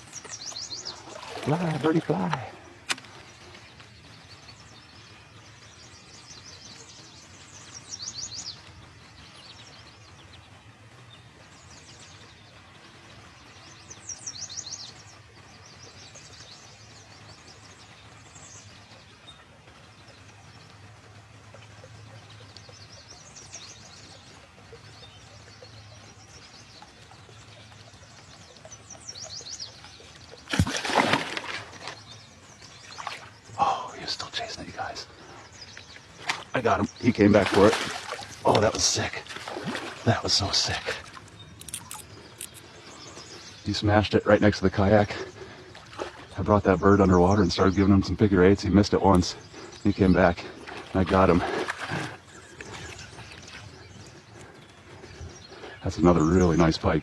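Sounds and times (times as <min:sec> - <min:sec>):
quiet river ambience: 0:00.0 - 0:57.0
songbirds trilling: 0:00.0 - 0:57.0
fish splashing in water: 0:26.8 - 0:33.6, 0:36.0 - 0:42.6, 0:50.6 - 0:54.2.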